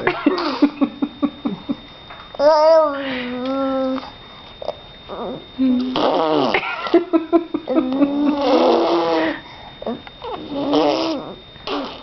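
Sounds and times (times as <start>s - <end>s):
child blowing raspberries: 5.9s - 6.6s, 8.4s - 9.5s, 10.3s - 12.0s.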